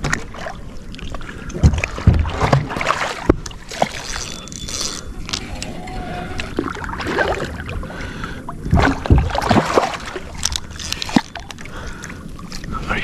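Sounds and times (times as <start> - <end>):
water splashing against kayak hull: 0.0 - 13.0
heavy thump: 1.6 - 2.8, 8.7 - 9.6.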